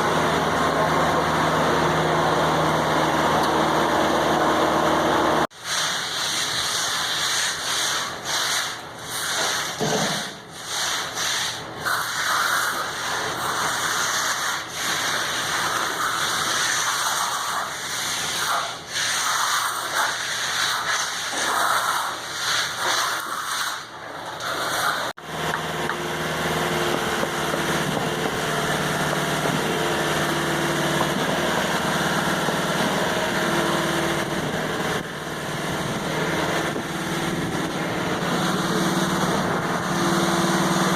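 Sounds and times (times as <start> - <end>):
small engine running: 0.0 - 5.5, 24.7 - 40.9
concrete scraping and rubbing: 5.7 - 25.2.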